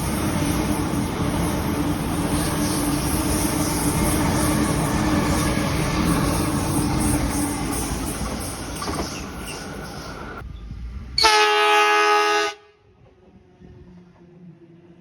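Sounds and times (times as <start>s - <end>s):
train rumbling: 0.0s - 15.0s
train horn blast: 11.2s - 13.0s.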